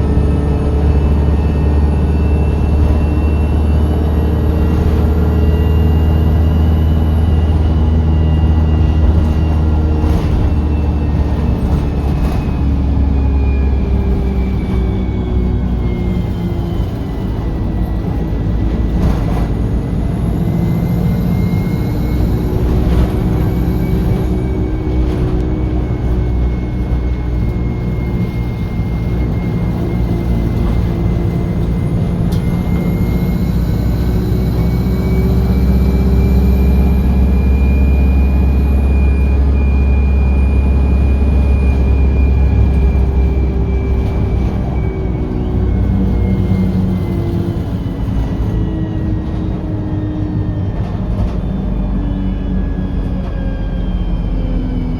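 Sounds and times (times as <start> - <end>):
bus diesel engine drone: 0.0 - 54.9
engine whine: 0.0 - 54.9
high whistle: 20.0 - 49.5.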